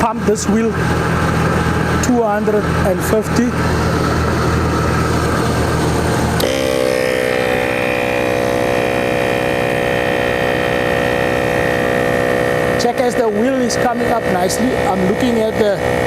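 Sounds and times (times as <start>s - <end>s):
air compressor humming: 0.0s - 16.0s.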